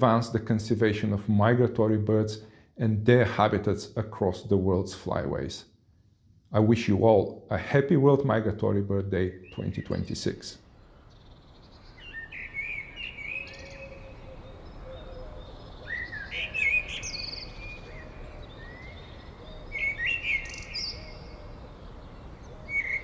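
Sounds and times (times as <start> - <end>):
outdoor background noise: 0.0 - 23.0
wild birds chirping: 9.2 - 23.0.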